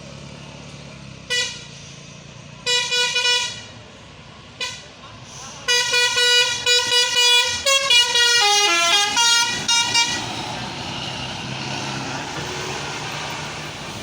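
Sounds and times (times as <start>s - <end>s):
bus engine and road noise: 0.0s - 14.0s
multi-tone bus horn melody: 1.3s - 1.8s, 2.6s - 3.8s, 4.6s - 5.0s, 5.6s - 10.8s.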